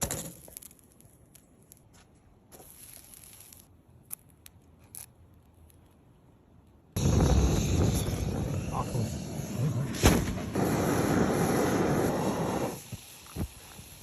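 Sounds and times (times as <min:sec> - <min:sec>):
soft rustle: 0:00.6 - 0:06.2.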